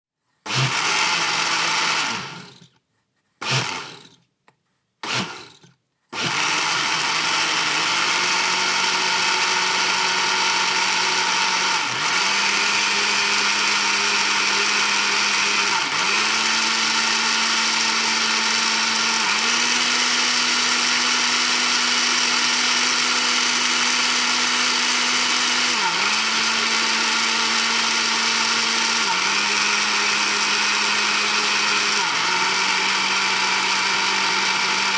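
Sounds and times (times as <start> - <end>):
electric blender running: 0.5 - 2.7, 3.4 - 4.2, 5.0 - 34.9.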